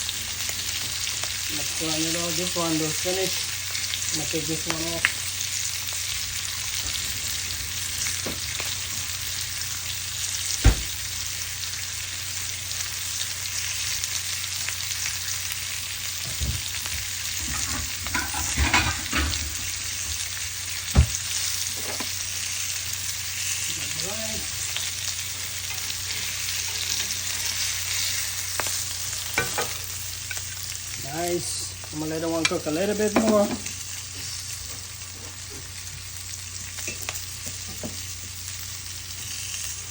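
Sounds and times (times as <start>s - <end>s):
food sizzling on a grill: 0.0s - 39.9s
sharp knocks: 10.6s - 11.0s.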